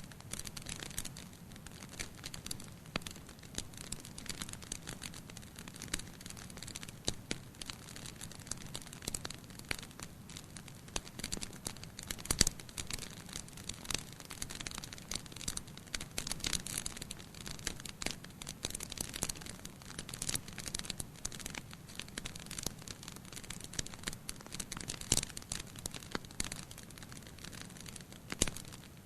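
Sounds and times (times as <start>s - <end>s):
campfire crackling and popping: 0.0s - 29.0s.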